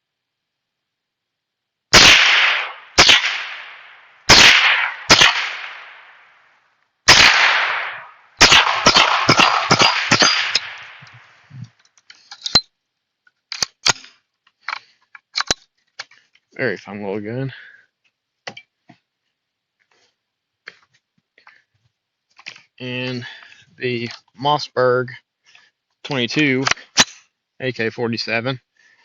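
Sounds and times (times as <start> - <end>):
rifle shots: 1.9 - 6.3, 7.1 - 11.2.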